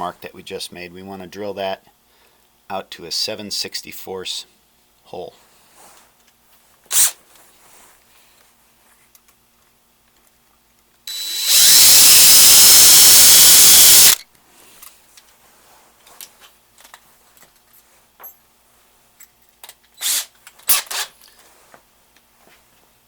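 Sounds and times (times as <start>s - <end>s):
power drill whining: 11.1s - 14.2s.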